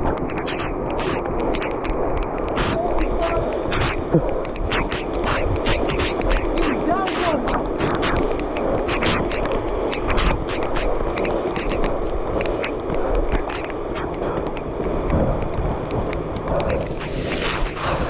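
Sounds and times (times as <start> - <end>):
wind on microphone: 0.0 - 18.0
heavy rain: 16.7 - 18.0.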